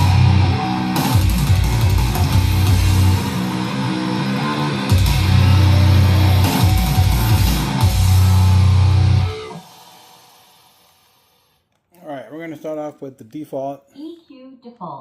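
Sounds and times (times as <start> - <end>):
heavy rock music: 0.0 - 10.6.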